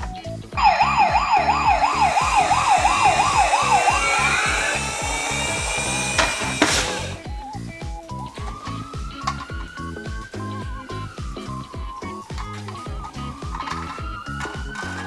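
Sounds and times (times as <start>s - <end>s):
background music with steady beat: 0.0s - 15.0s
toy electronic siren wailing: 0.6s - 7.2s.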